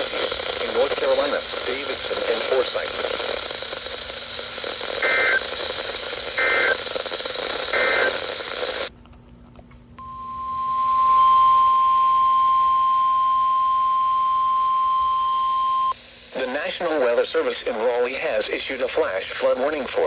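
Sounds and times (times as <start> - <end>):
buzzy digital data bursts: 0.0 - 8.6
radio hiss: 0.0 - 8.9, 10.1 - 20.0
single-pitched warning alarm tone: 10.0 - 15.9.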